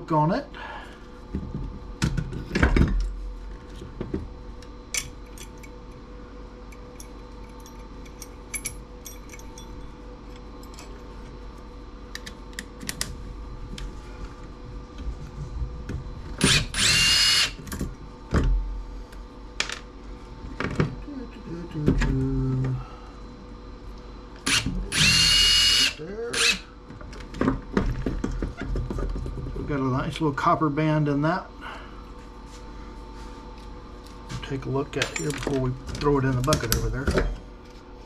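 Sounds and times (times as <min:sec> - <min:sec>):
power drill running: 0:16.4 - 0:17.6, 0:24.4 - 0:26.6.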